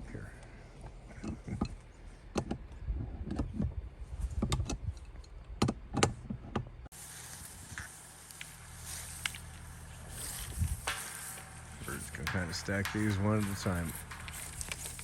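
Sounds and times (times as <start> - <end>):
steady low hum: 6.8 - 15.0
tools knocking and clicking: 10.4 - 15.0.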